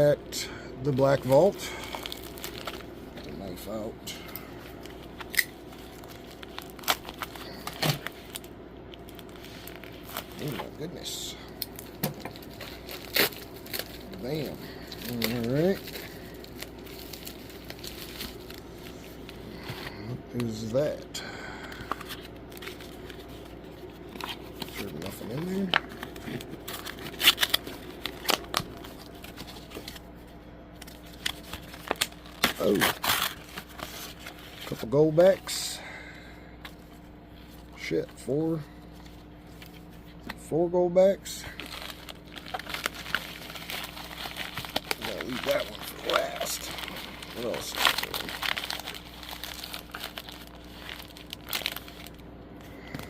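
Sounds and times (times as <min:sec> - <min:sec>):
tape and packaging tearing: 0:05.2 - 0:08.5, 0:11.6 - 0:18.6, 0:24.1 - 0:30.0, 0:30.8 - 0:34.8, 0:41.6 - 0:52.2
knife cutting a package: 0:31.2 - 0:34.4.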